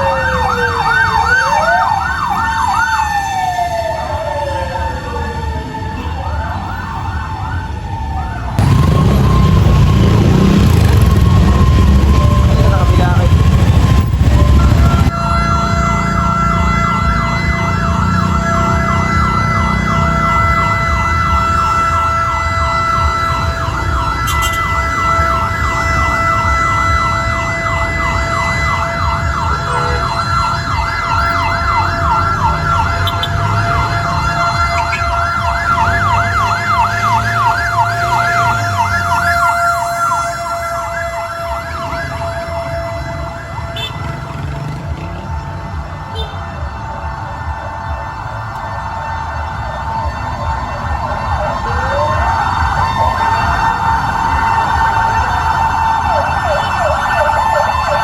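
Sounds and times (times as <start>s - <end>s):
fire truck siren yelping: 0.0s - 58.0s
steady siren tone: 0.0s - 58.0s
truck engine running: 8.6s - 15.1s.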